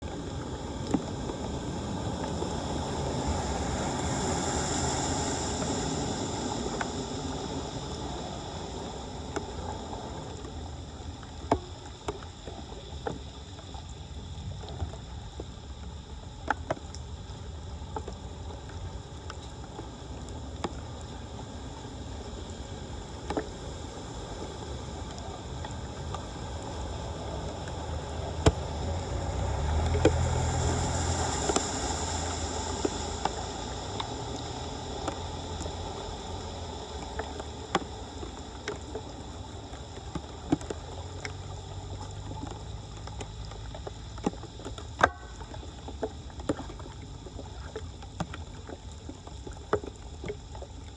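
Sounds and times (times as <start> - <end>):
floodwater rushing: 23.3 - 50.9.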